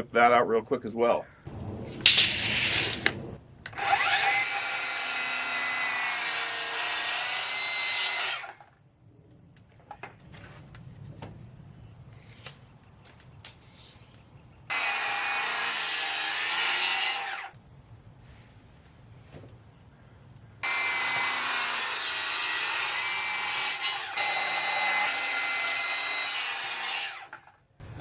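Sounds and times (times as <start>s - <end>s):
power saw cutting wood: 2.1s - 8.6s, 14.7s - 17.5s, 20.6s - 27.5s.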